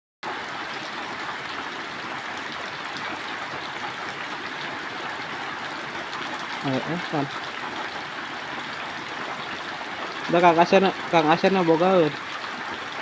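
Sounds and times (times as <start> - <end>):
heavy rain falling: 8.4 - 13.0.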